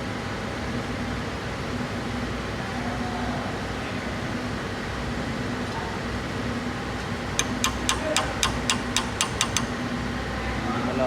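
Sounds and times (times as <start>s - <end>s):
workshop hum: 2.2s - 11.0s
sharp metallic clicks: 7.4s - 9.8s.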